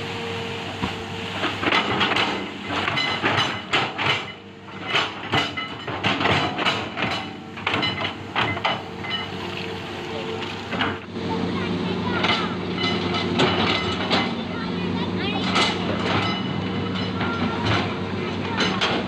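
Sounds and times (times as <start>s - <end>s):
metallic clanks and scrapes: 1.4s - 9.5s, 12.2s - 14.4s, 15.4s - 19.0s.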